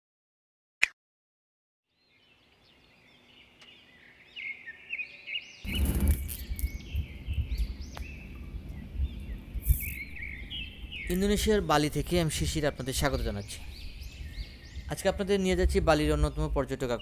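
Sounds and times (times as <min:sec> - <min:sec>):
small birds chirping: 0:01.9 - 0:17.0
low uneven rumbling: 0:05.7 - 0:17.0.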